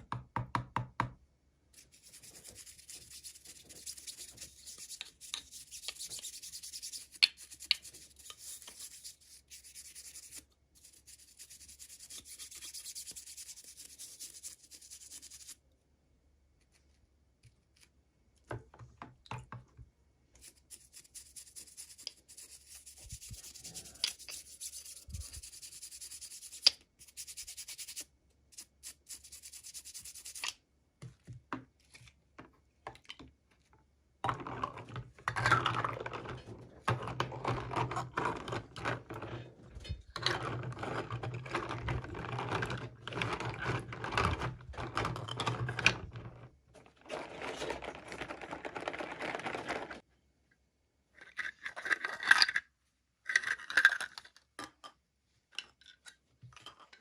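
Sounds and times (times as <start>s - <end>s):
packaging rustling: 46.9s - 50.0s.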